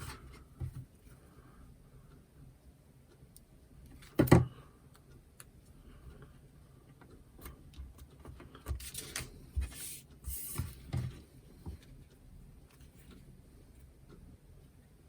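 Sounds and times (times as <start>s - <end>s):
paper rustling: 8.8s - 10.8s.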